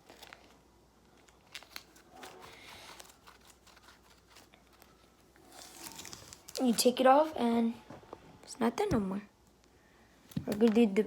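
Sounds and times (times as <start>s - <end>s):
tape crinkling: 0.0s - 7.0s.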